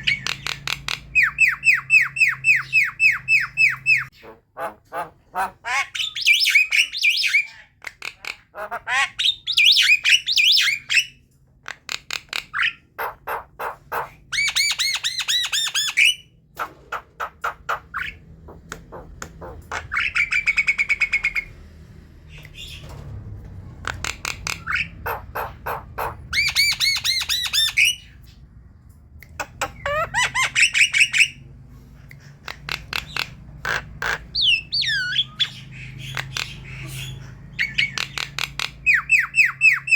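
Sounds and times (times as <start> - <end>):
bird chattering song: 23.8 - 28.5, 32.1 - 39.9.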